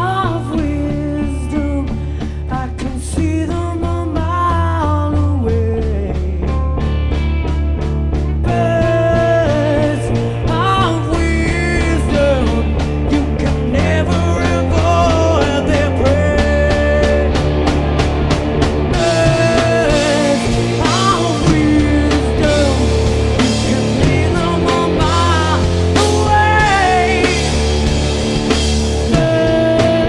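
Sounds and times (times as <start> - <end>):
bass notes: 0.0 - 30.0
lead guitar with bending notes: 0.0 - 30.0
steady drum beat: 0.0 - 30.0.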